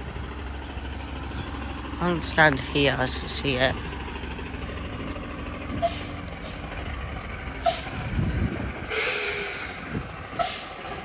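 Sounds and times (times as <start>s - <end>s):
diesel bus engine running: 0.0s - 11.0s
air brakes hissing: 5.8s - 6.7s, 7.6s - 8.0s, 8.9s - 10.9s.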